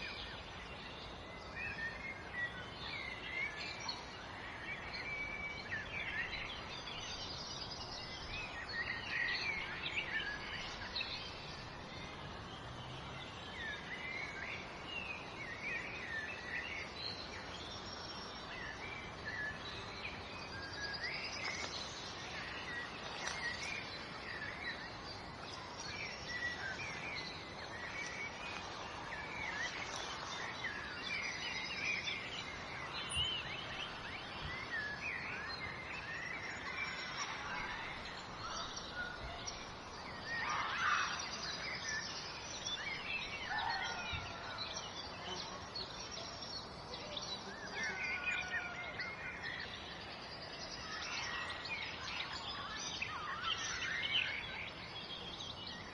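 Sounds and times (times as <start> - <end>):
small birds chirping: 0.0 - 55.9
steady background hiss: 0.0 - 55.9.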